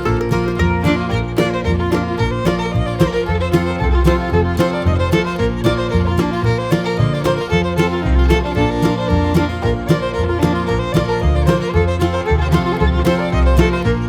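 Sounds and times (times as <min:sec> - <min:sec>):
bluegrass music with fiddle: 0:00.0 - 0:14.0.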